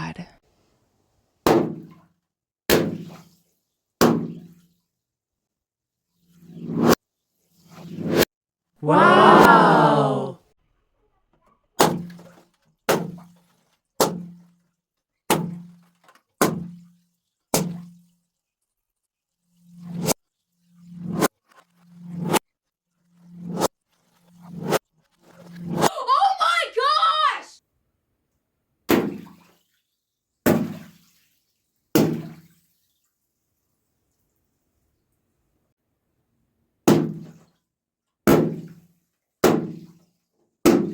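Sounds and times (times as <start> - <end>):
water balloons bursting: 1.5 - 2.0, 28.9 - 29.2.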